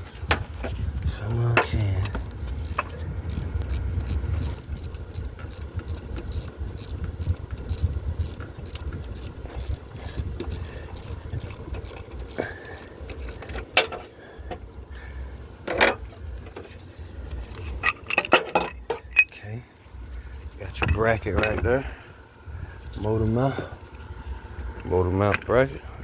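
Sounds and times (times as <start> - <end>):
tools clinking against metal: 1.6 - 14.0, 17.8 - 19.4, 20.8 - 21.7.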